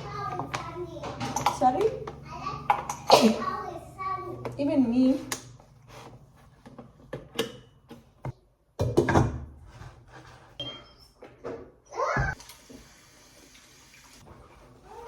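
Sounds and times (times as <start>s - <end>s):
household objects clattering: 0.0s - 3.6s.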